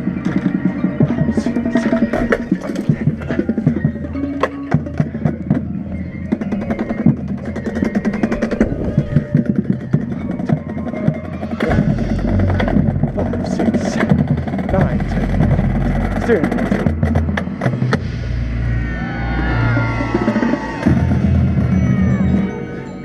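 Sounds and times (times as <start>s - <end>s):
marching band playing: 0.0s - 18.1s
drum hits: 6.4s - 18.2s
low rumble: 11.5s - 22.4s.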